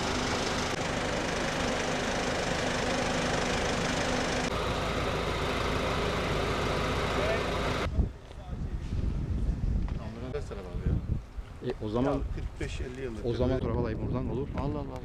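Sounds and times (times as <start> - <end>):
car engine running: 0.0 - 7.9
road noise: 0.0 - 9.4.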